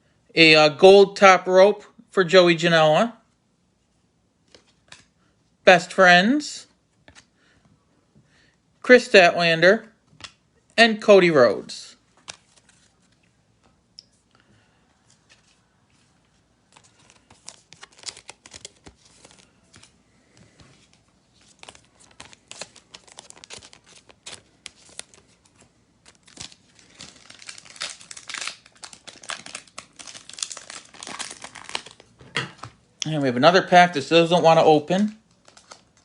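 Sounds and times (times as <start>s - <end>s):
foil wrapper crinkling and tearing: 16.9s - 19.5s, 21.5s - 32.2s, 35.3s - 36.0s.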